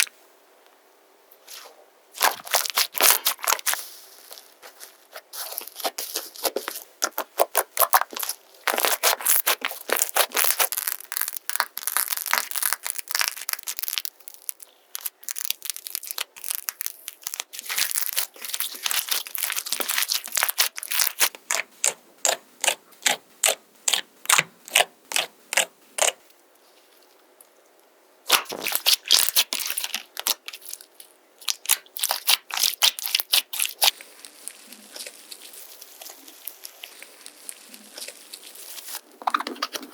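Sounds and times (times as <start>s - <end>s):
slime crackling and snapping: 2.2s - 3.8s, 7.0s - 21.6s, 28.3s - 39.0s.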